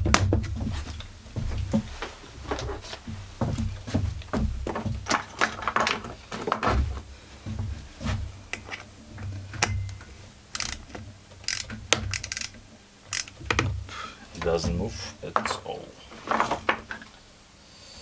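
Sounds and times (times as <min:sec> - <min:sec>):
tool clattering on metal: 0:00.0 - 0:17.1
hand ratchet clicking: 0:09.6 - 0:13.7.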